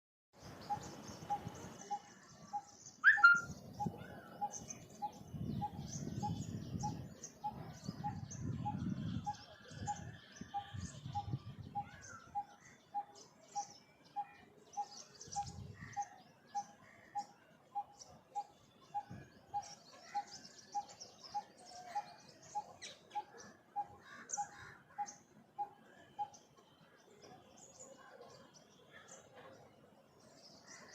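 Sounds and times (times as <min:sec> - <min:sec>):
birds chirping: 0:00.4 - 0:30.9
bird calling low notes: 0:03.0 - 0:04.2.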